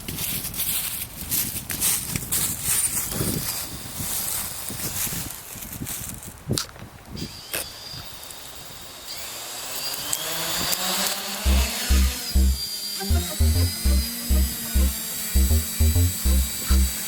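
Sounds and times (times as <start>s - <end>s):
quadcopter motor whine: 7.2s - 17.0s
music with heavy bass beat: 11.5s - 17.0s.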